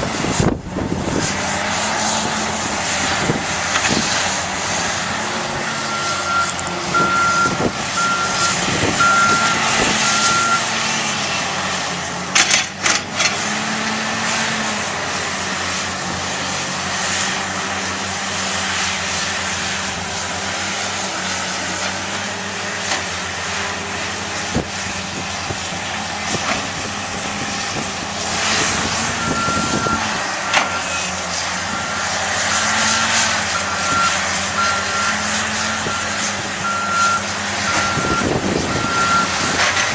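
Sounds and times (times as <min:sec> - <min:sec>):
diesel earthmoving machine running: 0:00.0 - 0:39.9
reversing alarm beeping: 0:05.8 - 0:10.8, 0:29.0 - 0:32.1, 0:33.5 - 0:39.6.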